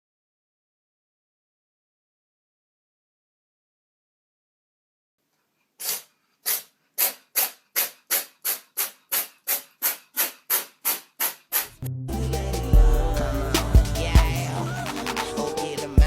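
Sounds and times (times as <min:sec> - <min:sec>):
short sharp hisses: 0:05.8 - 0:11.7
background music with a beat: 0:12.1 - 0:16.0.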